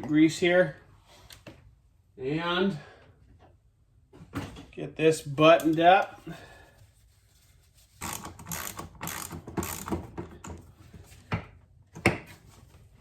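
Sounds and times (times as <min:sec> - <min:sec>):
ratcheting metallic clicks: 0:08.0 - 0:10.0.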